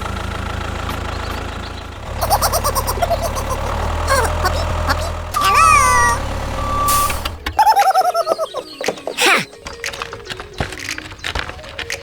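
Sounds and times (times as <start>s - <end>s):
engine idling hum: 0.0s - 7.6s
high-pitched warbling squeaks: 2.2s - 9.4s.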